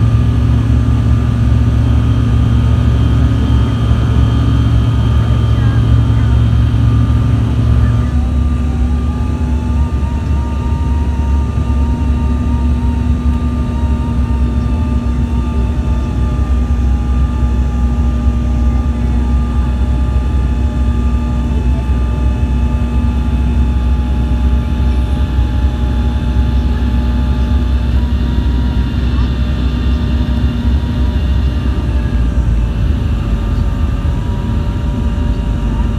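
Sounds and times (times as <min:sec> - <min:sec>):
airplane engines droning: 0:00.0 - 0:35.9.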